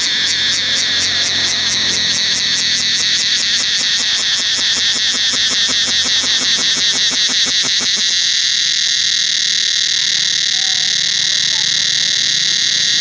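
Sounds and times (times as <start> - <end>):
cicada chorus: 0.0 - 13.0.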